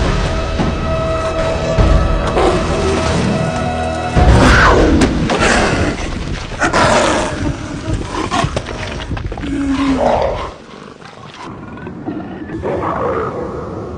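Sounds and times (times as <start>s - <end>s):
big cats snarling and roaring: 4.3s - 13.9s.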